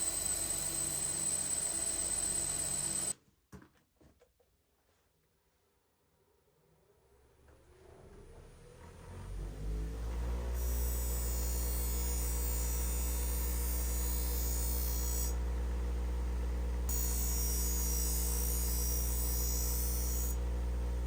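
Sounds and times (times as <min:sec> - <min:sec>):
low electrical hum: 0:10.2 - 0:21.0.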